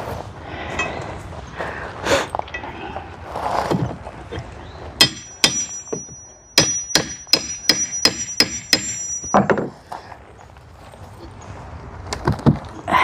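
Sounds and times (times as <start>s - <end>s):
hammer striking with metallic ring: 5.0s - 9.8s.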